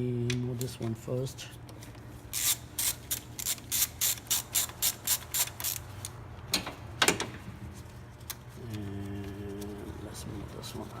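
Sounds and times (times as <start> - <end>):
ratchet wrench clicking: 2.3 - 5.8.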